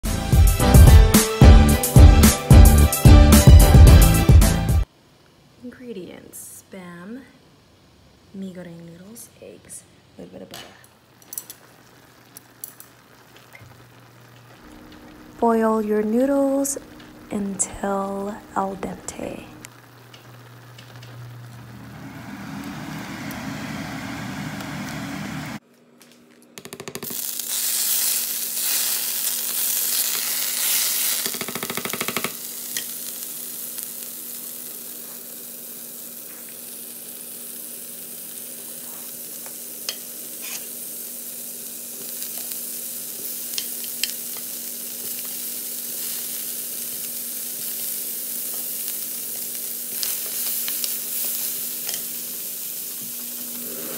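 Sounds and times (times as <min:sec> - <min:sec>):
food sizzling in frying pan: 0:10.1 - 0:25.6, 0:27.0 - 0:53.9.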